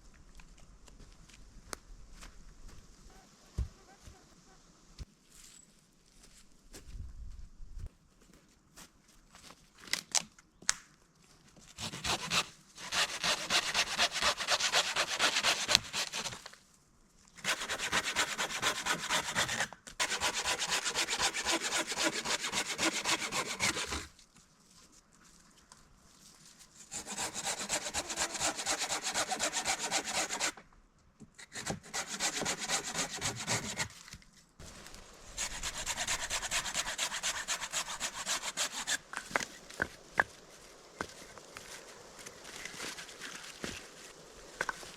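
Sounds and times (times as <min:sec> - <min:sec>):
hand saw cutting wood: 0:11.8 - 0:16.5, 0:17.4 - 0:24.2, 0:26.8 - 0:30.6, 0:31.4 - 0:34.0, 0:35.3 - 0:39.9.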